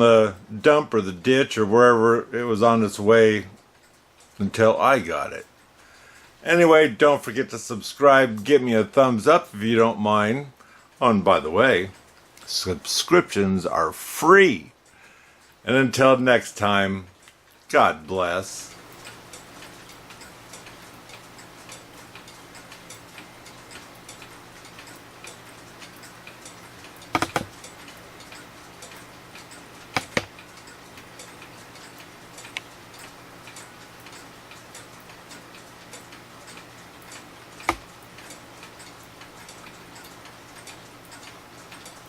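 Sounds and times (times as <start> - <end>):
pendulum clock ticking: 18.2 - 42.0
sharp clock clicks: 18.7 - 42.0.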